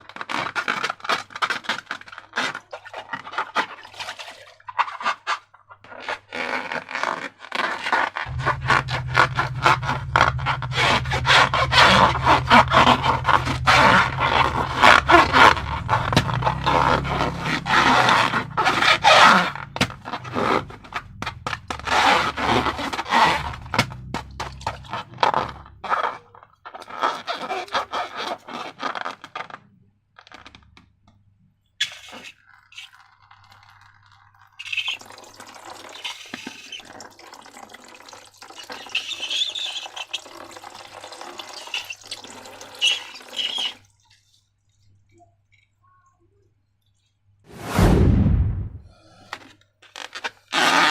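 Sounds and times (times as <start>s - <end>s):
sticky slime crackling and scraping: 0.0s - 4.0s, 4.8s - 30.6s.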